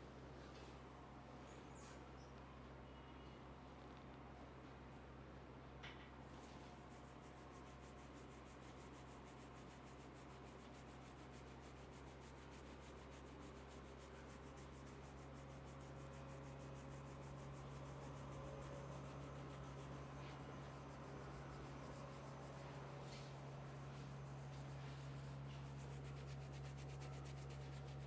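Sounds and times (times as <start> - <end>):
steady low hum: 6.3 - 28.0
hands rubbing hair: 6.4 - 28.0.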